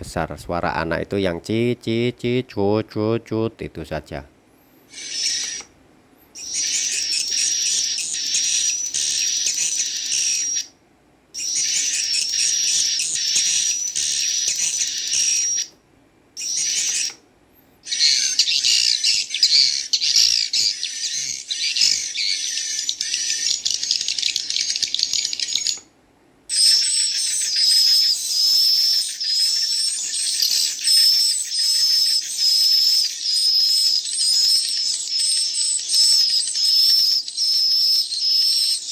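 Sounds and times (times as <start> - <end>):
bird chick chirping through speaker: 0.0 - 4.3, 4.9 - 5.7, 6.3 - 15.8, 16.4 - 17.2, 17.8 - 25.9, 26.5 - 38.9
adult bird calls: 0.0 - 5.7, 16.4 - 17.2, 17.8 - 25.9, 26.5 - 38.9.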